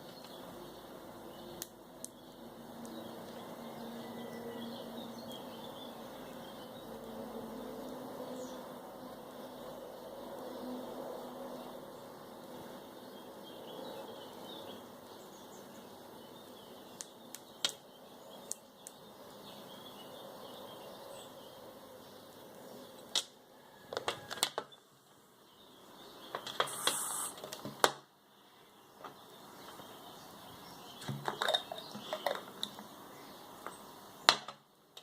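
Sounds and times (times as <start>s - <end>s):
short airy hiss: 26.6s - 27.4s.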